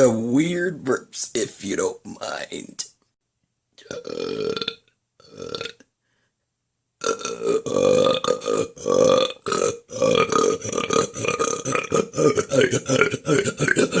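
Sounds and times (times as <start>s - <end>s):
woman burping: 7.0s - 14.0s.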